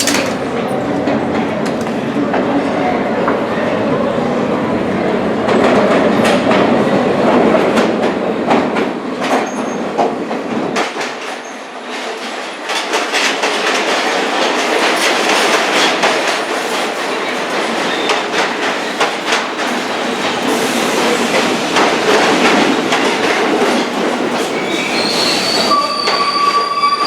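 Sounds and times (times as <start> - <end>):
wheels clattering over rail joints: 0.0 - 2.5
subway train rumble: 0.0 - 27.0.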